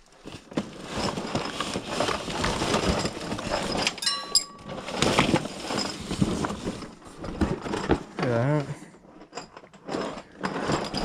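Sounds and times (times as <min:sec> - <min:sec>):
rummaging through boxes and bags: 0:00.0 - 0:11.0
metallic clink: 0:04.0 - 0:05.4.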